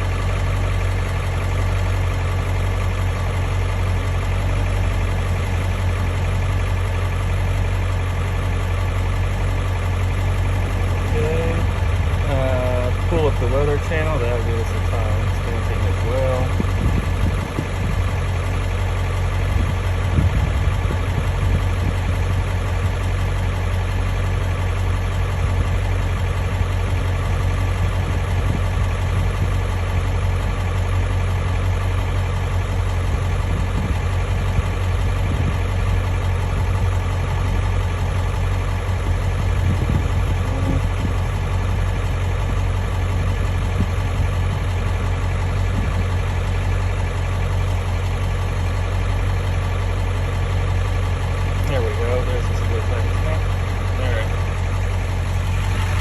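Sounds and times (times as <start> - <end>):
pickup truck engine idling: 0.0 - 56.0.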